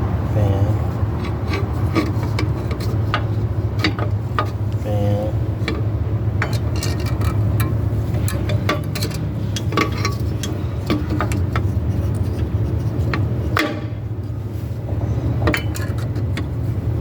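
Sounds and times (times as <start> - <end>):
steady low hum: 0.0 - 17.0
metal clicks and clinks: 5.6 - 12.4, 15.5 - 16.5.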